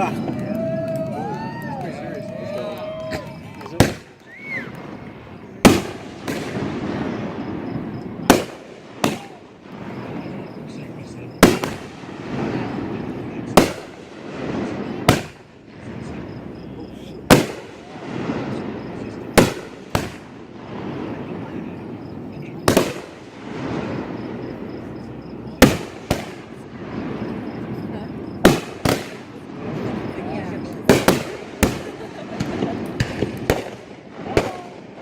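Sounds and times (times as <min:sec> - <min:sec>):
fireworks bangs: 0:00.0 - 0:35.0
rolling rumble: 0:00.0 - 0:35.0.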